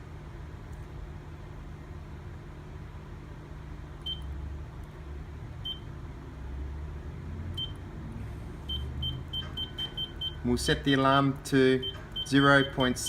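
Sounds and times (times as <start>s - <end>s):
steady low hum: 0.0s - 13.0s
high key-press beeps: 4.0s - 4.4s, 5.6s - 5.9s, 7.6s - 7.8s, 8.6s - 10.4s, 11.8s - 13.0s.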